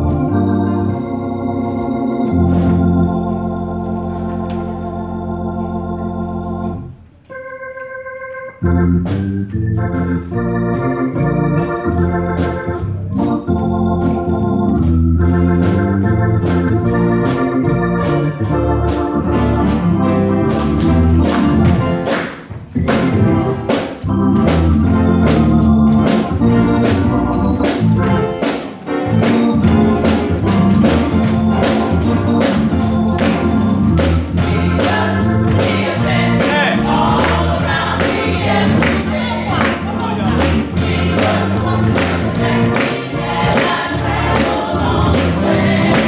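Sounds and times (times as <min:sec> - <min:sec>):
church organ playing: 0:00.0 - 0:46.0
steady drum beat: 0:26.1 - 0:46.0.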